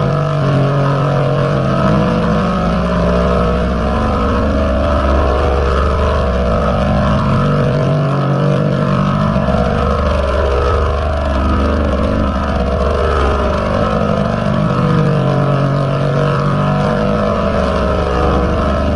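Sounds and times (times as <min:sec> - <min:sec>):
distorted layered drone: 0:00.0 - 0:18.9.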